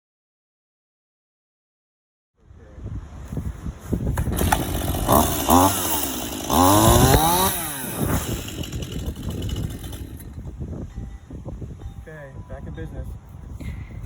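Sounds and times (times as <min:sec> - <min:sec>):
chainsaw revving: 0:04.2 - 0:10.4.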